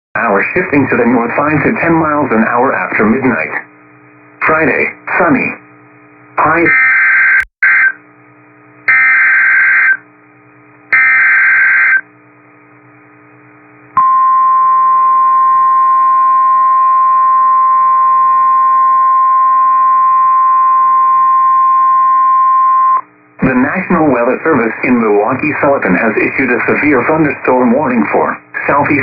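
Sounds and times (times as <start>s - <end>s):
receiver low hum: 0.2s - 29.0s
steady warning alarm tone: 6.7s - 8.0s, 8.9s - 10.0s, 10.9s - 12.1s, 14.0s - 23.0s.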